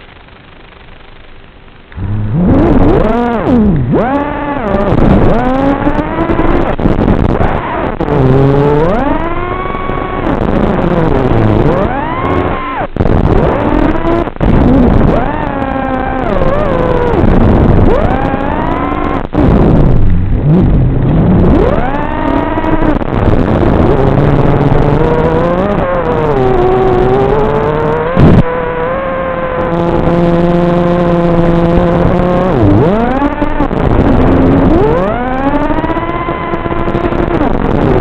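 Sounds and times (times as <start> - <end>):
quadcopter motors whining: 2.0 - 6.6, 20.4 - 23.0.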